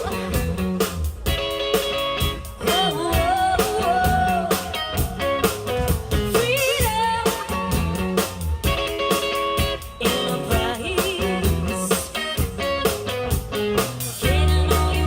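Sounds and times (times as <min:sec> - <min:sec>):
drums: 0:00.0 - 0:15.0
electric guitar: 0:00.0 - 0:15.0
person singing: 0:02.6 - 0:12.4, 0:14.2 - 0:15.0.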